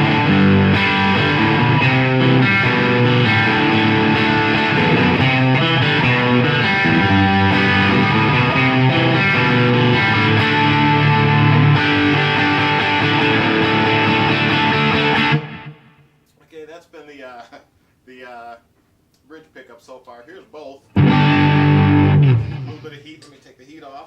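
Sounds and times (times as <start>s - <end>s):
overdriven electric guitar: 0.0s - 16.1s, 21.0s - 22.9s.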